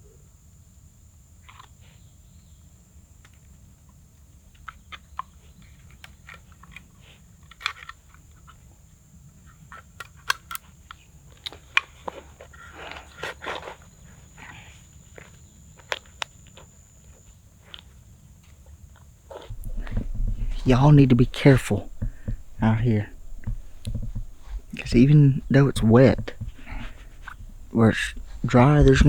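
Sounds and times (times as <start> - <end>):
undergrowth crackling and snapping: 19.5 - 29.0.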